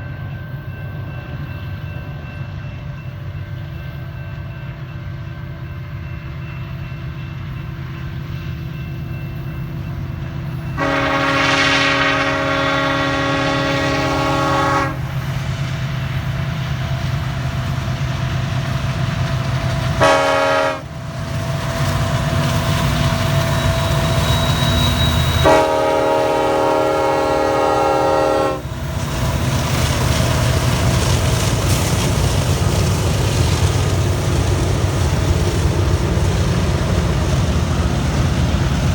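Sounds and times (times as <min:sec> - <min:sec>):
diesel locomotive engines rumbling: 0:00.0 - 0:38.9
multi-chime air horn blasts: 0:10.8 - 0:15.2, 0:20.0 - 0:20.9, 0:23.8 - 0:28.7.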